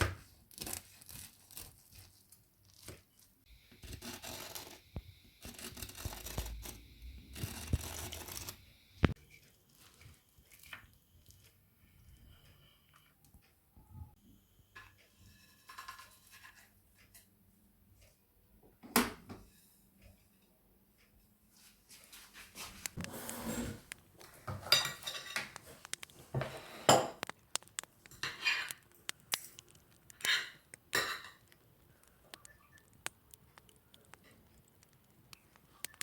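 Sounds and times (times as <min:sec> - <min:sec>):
dishes and cutlery clinking: 0:23.4 - 0:27.3, 0:28.1 - 0:31.6.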